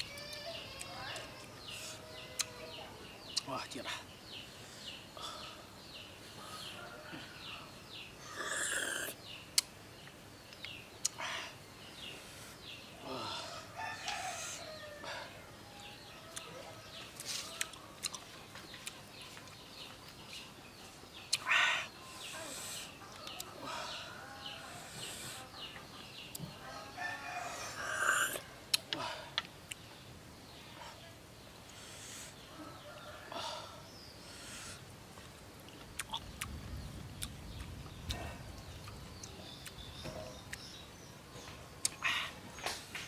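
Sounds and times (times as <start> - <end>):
rooster crowing: 13.2 - 16.8, 26.6 - 28.4.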